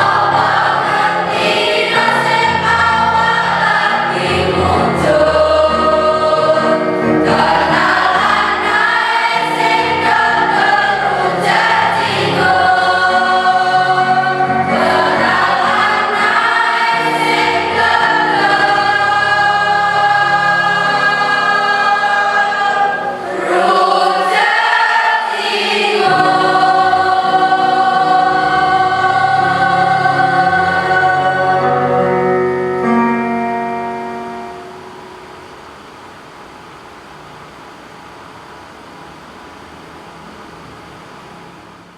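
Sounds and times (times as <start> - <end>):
choir singing in harmony: 0.0 - 34.8.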